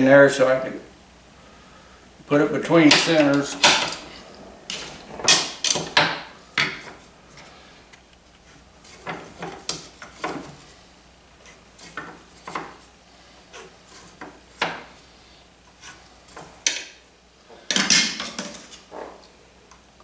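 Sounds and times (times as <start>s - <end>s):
rough scraping: 2.7s - 7.6s
knocks of wood and metal tools: 2.9s - 4.1s.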